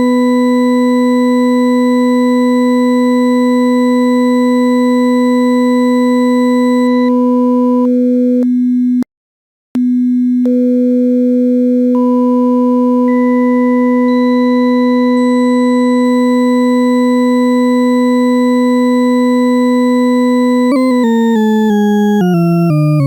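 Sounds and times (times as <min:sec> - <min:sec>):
synthesized organ-like low tone: 0:12.0 - 0:23.0.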